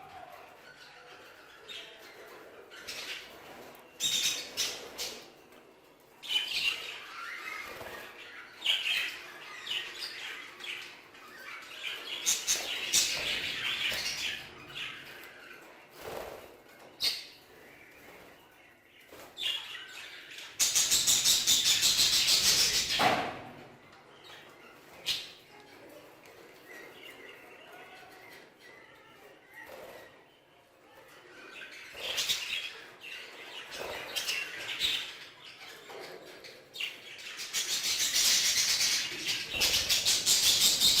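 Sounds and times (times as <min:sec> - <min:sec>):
budgerigars chirping and squawking: 0:00.6 - 0:05.4, 0:06.2 - 0:16.4, 0:19.1 - 0:23.1, 0:31.3 - 0:41.0.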